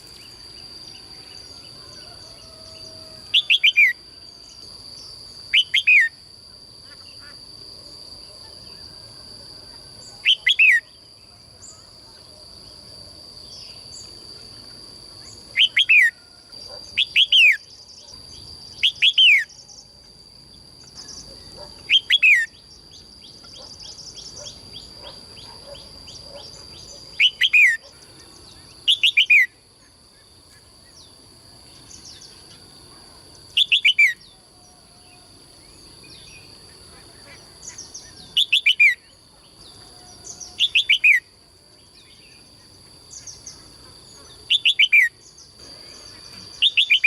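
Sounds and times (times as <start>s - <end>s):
songbird whistling calls: 3.3s - 4.0s, 5.5s - 6.2s, 10.2s - 10.9s, 15.6s - 16.2s, 21.9s - 24.9s, 26.8s - 27.9s, 28.9s - 29.6s, 33.6s - 34.3s, 37.7s - 39.1s, 40.2s - 41.3s, 44.5s - 45.2s, 46.6s - 47.0s.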